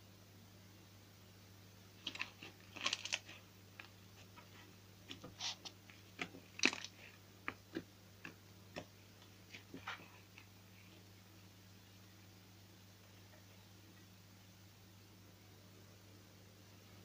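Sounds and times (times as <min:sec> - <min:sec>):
slime crackling and popping: 0:02.0 - 0:03.9, 0:06.1 - 0:08.9.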